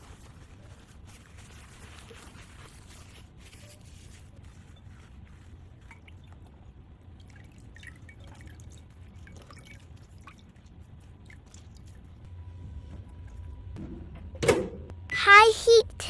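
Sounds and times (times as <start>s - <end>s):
low steady hum: 0.0s - 16.0s
water dripping: 5.8s - 12.3s.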